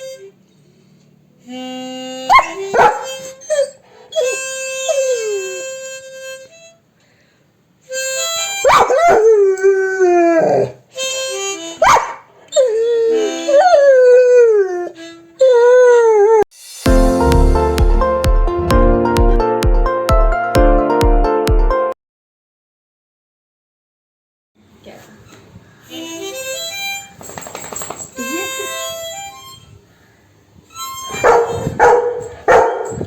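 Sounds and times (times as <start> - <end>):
harmonica notes: 0.0 - 0.4, 1.4 - 8.8, 10.9 - 11.9, 16.6 - 21.2, 25.8 - 27.2, 28.2 - 30.1, 30.7 - 33.0
dog howling: 8.7 - 10.8, 11.8 - 16.4, 31.1 - 33.0.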